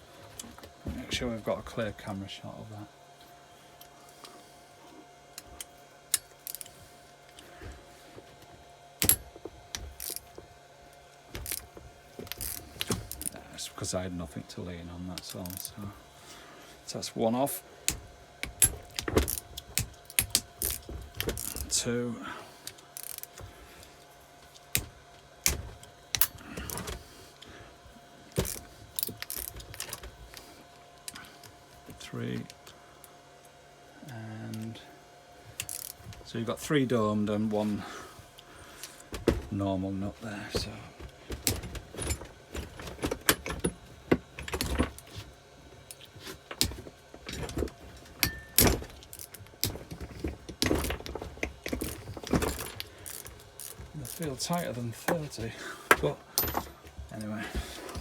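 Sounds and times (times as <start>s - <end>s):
wrench clicking on metal: 35.6s - 35.9s
tools rattling: 46.5s - 58.0s.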